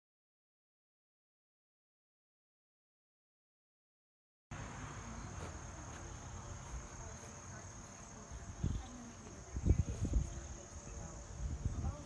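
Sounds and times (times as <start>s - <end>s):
crickets trilling: 4.5s - 12.0s.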